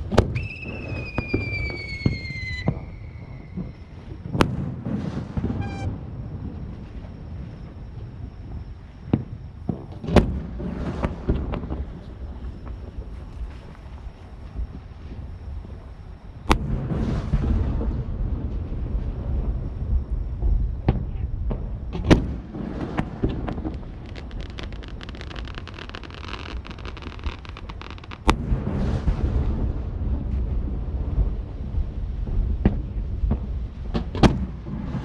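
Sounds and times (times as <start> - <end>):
firework pops: 0.0 - 6.0, 9.1 - 14.0, 16.4 - 18.0, 20.8 - 29.6, 32.6 - 35.0
firework crackling: 0.0 - 8.1, 9.1 - 35.0
firework bangs with hiss: 0.0 - 35.0
wind rumble on microphone: 0.0 - 35.0.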